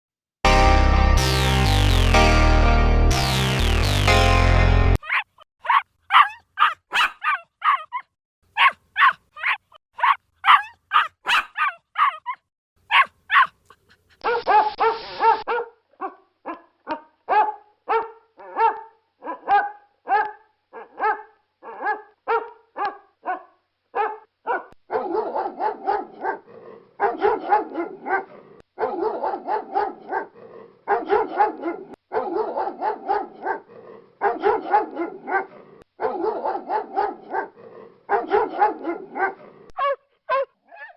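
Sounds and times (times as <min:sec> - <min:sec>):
dogs barking: 0:05.0 - 0:08.0, 0:08.6 - 0:13.6, 0:14.2 - 0:40.9
high-pitched dog yapping: 0:05.0 - 0:26.4, 0:38.1 - 0:40.9.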